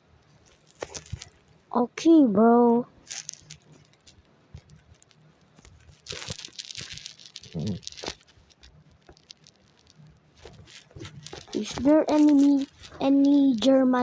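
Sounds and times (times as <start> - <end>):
handling clicks and rustling: 0.4 - 1.5, 3.0 - 14.0
low hum-like vocal sound: 7.6 - 7.8.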